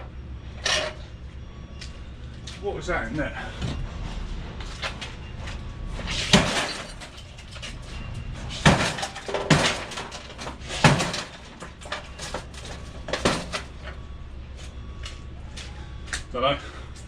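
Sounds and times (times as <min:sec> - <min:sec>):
low steady hum: 0:00.0 - 0:17.0
scrap knocking and clattering: 0:03.6 - 0:13.7.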